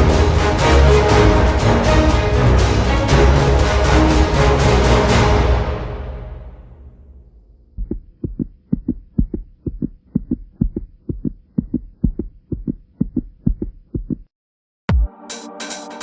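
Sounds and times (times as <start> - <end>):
rhythmic low thuds in pairs: 0.0 - 5.7, 7.6 - 14.3.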